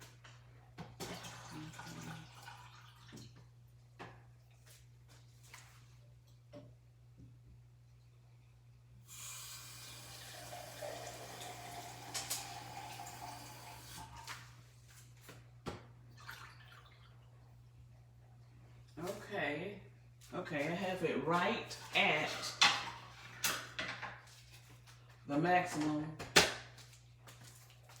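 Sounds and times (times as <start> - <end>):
water running into a tank: 0.8 - 4.8, 9.0 - 14.6, 16.0 - 17.6.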